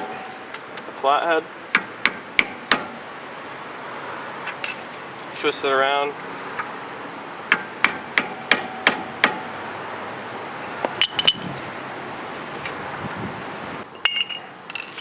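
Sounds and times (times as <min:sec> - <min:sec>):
ringing metallic clinks: 0:11.0 - 0:11.5, 0:14.0 - 0:15.0.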